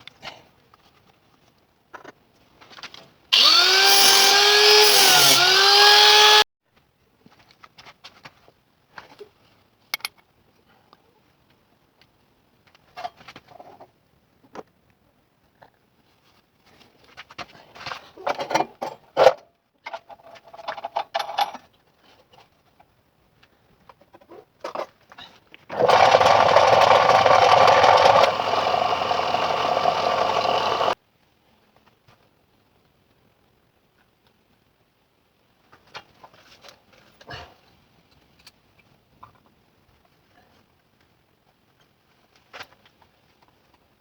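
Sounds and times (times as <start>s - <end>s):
electric motor running: 3.4s - 6.4s, 25.7s - 31.0s
power tool: 3.4s - 6.4s, 25.7s - 31.0s.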